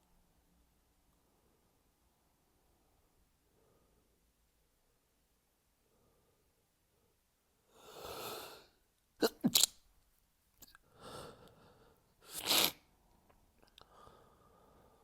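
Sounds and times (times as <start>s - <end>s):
person breathing in: 7.7s - 8.8s, 13.9s - 15.0s
person sneezing: 9.2s - 9.7s, 12.3s - 12.8s.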